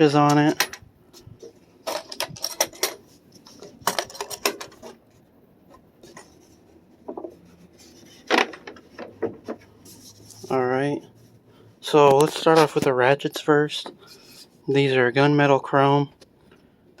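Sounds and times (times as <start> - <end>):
tools rattling in case: 1.4 - 5.0.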